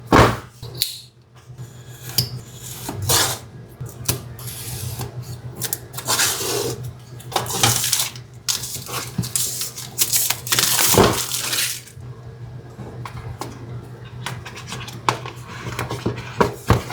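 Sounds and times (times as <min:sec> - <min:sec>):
cardboard packaging scraping: 0:07.4 - 0:12.0.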